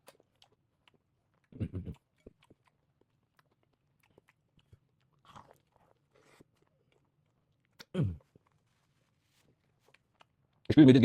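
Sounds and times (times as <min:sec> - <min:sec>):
chewing crunchy food: 0:00.0 - 0:10.7.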